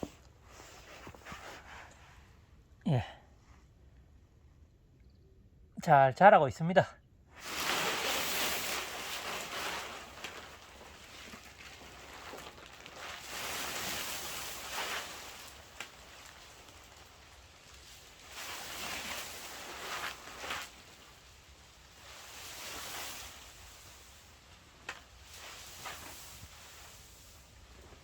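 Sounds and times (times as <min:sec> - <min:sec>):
wind buffeting plastic film: 0:07.4 - 0:28.0.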